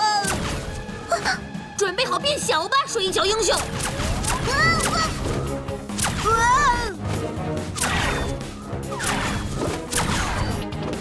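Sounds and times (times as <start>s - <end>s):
cartoon background music: 0.0s - 11.0s
sharp hits and swishes: 3.5s - 10.7s.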